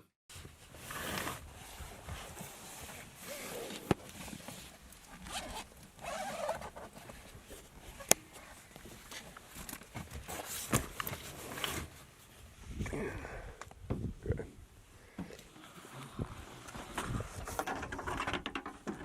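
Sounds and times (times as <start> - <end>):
rustling and handling noises: 0.3 - 12.7.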